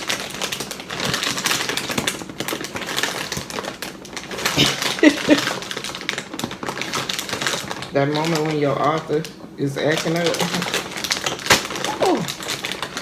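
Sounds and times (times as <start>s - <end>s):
plastic bag crinkling: 0.0s - 13.0s.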